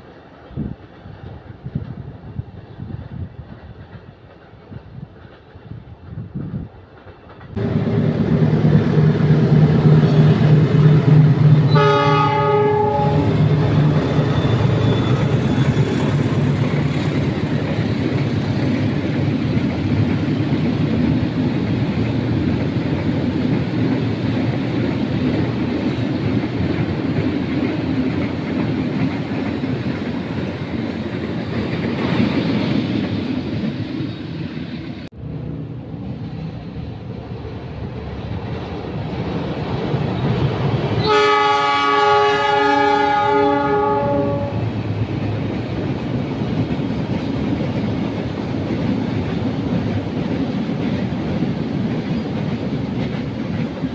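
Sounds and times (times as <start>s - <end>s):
train cars rolling on rails: 0.0s - 53.9s
train horn: 7.6s - 16.2s, 41.0s - 44.8s.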